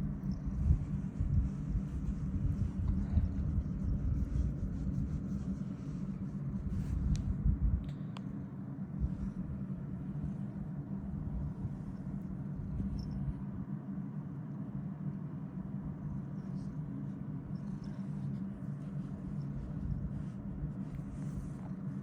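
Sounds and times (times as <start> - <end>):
cat purring: 17.4 - 22.0.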